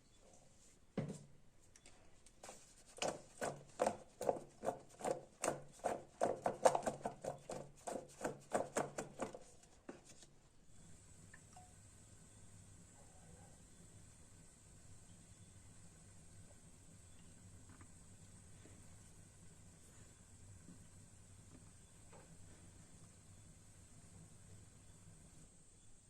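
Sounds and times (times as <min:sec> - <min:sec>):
knife chopping on cutting board: 0:03.0 - 0:09.4.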